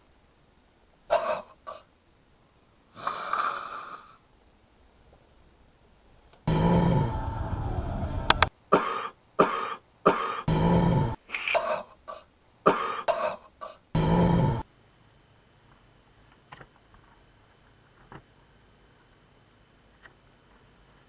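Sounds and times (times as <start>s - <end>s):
person coughing harshly: 1.1s - 1.8s, 8.8s - 14.6s.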